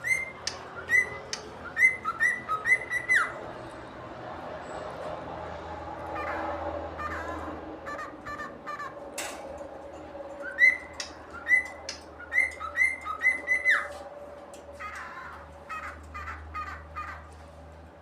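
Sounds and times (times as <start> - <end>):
cockatiel whistling: 0.0 - 3.3, 10.4 - 13.9
bird chirps and squawks: 0.0 - 3.4, 6.0 - 9.2, 10.4 - 14.0, 14.8 - 17.3.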